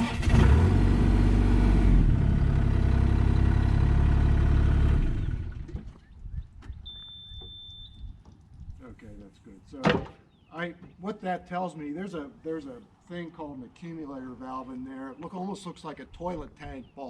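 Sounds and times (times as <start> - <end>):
high-pitched beep: 6.9 - 8.0.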